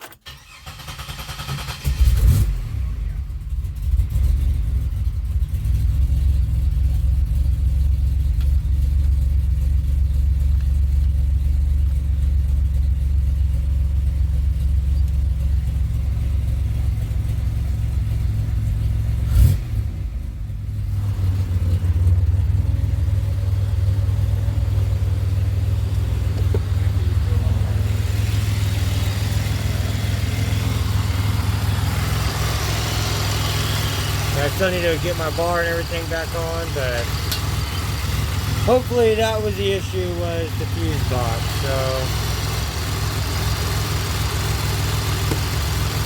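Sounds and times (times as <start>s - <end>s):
car engine running: 0.2s - 46.0s.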